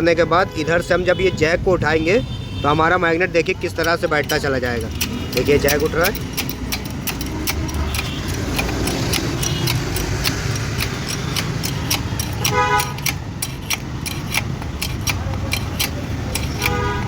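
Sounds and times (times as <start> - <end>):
road traffic rumble: 0.0 - 17.0
vehicle horn tooting: 0.1 - 3.1, 7.8 - 8.5, 12.1 - 13.1, 16.5 - 17.0
sharp clicks: 3.6 - 17.0.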